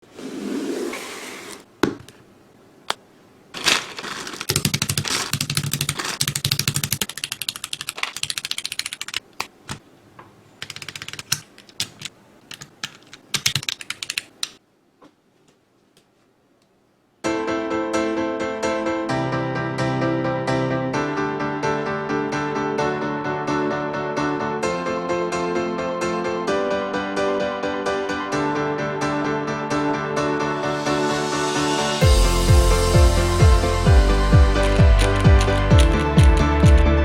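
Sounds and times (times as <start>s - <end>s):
fast typing on mechanical keyboard: 3.7s - 9.5s, 10.6s - 14.6s, 34.4s - 37.0s
piano-like music: 17.3s - 37.0s.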